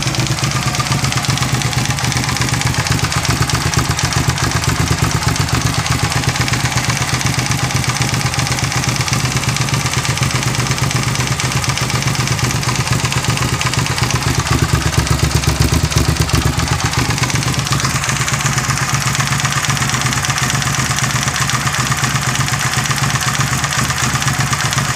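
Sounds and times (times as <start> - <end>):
motorcycle engine idling with knock: 0.0 - 24.9.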